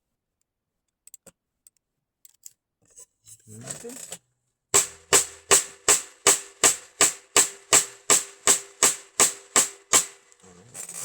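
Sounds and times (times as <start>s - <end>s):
snare drum hits: 4.8s - 10.3s.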